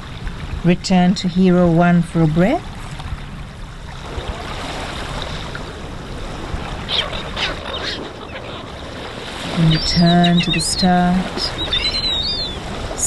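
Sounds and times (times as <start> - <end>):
flowing water: 0.0 - 13.0.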